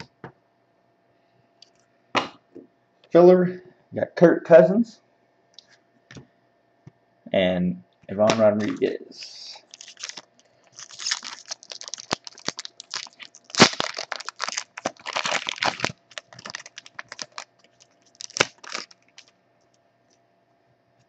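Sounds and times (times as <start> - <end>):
foil wrapper crinkling and tearing: 9.6 - 19.4.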